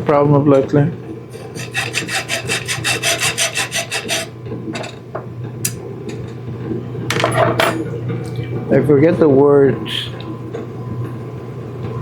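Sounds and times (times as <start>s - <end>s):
rasping scraping strokes: 1.4s - 4.3s.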